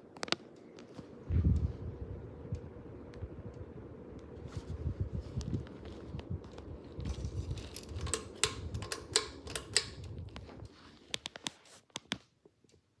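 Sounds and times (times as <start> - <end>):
ceiling fan rumbling: 0.0 - 11.8
sharp clicks and knocks: 6.6 - 12.2.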